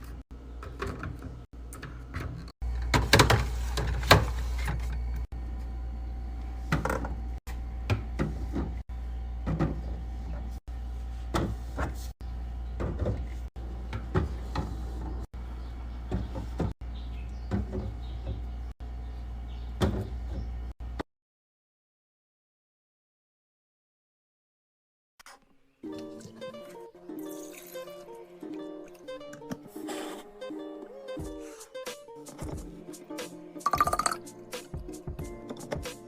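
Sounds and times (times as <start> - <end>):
refrigerator hum: 0.0 - 21.0.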